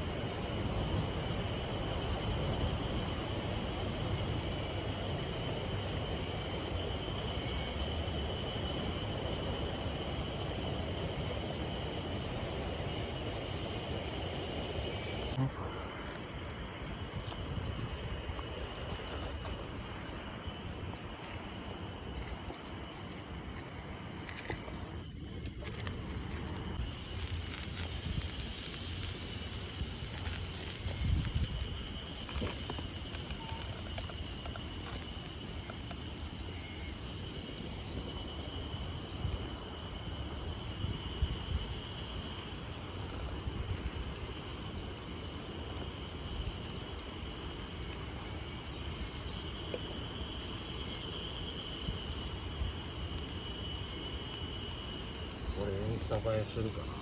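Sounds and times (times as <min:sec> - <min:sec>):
campfire crackling and popping: 0:15.4 - 0:57.0.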